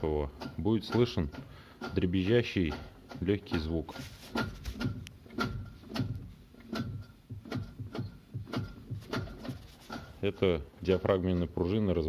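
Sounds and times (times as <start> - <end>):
light rattling knocks from gearbox: 0.4 - 11.6.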